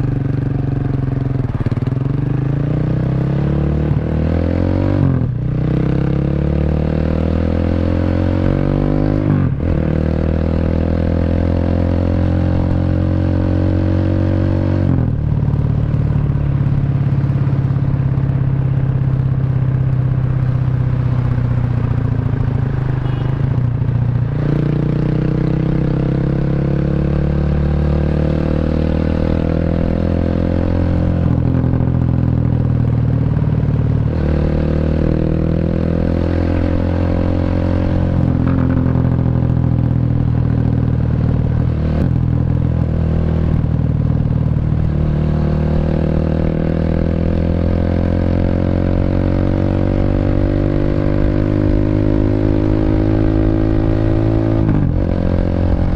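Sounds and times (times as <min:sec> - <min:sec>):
motorcycle exhaust accelerating: 0:00.0 - 0:55.9.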